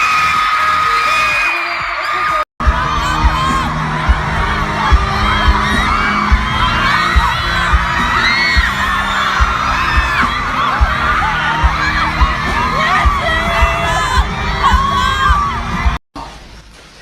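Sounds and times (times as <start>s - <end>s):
crowd screaming and cheering: 0.0s - 16.0s
music with low beat: 2.6s - 16.0s.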